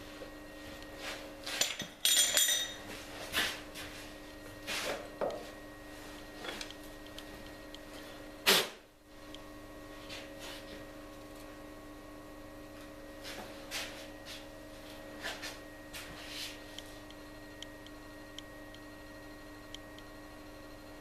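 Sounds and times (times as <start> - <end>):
metallic clink ringing: 2.0 - 2.8
machine hum: 2.4 - 21.0.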